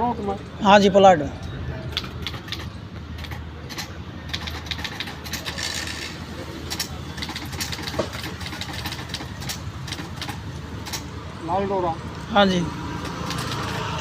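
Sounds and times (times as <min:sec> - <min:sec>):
typewriter keys clacking: 0:01.9 - 0:06.0, 0:06.7 - 0:11.0, 0:13.1 - 0:13.8.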